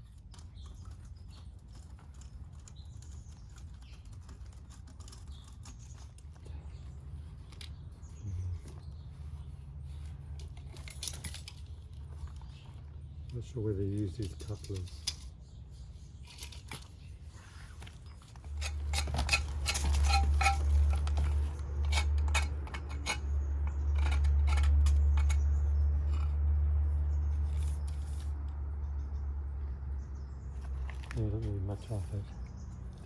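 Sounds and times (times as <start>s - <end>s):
tools and parts clinking: 10.3s - 13.3s, 13.9s - 15.5s, 16.1s - 26.5s.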